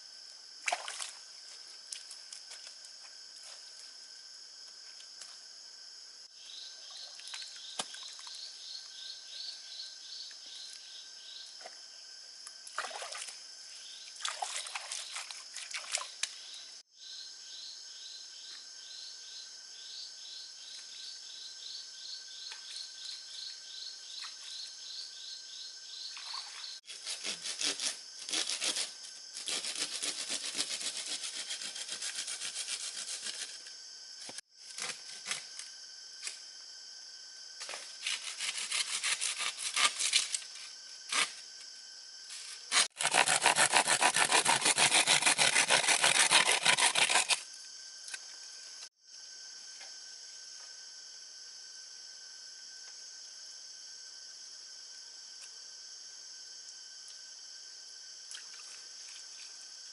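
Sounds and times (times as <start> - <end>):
insect drone: 0.0 - 59.9
insects chirping: 0.0 - 59.9
hand saw cutting wood: 26.9 - 33.5, 38.1 - 40.3, 42.7 - 47.4.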